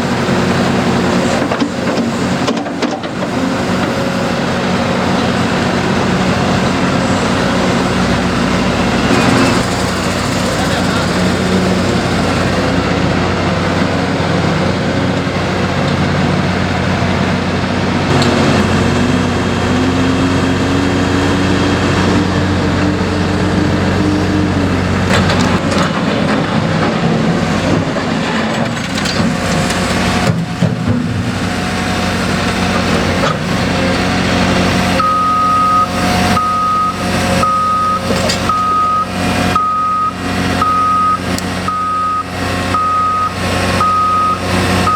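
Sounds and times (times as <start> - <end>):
construction machinery diesel engines: 0.0 - 44.9
backup alarm beeping: 35.0 - 44.9.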